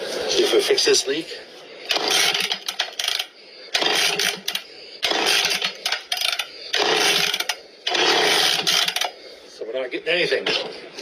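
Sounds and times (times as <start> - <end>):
chainsaw starter cord pulls: 1.9 - 9.2.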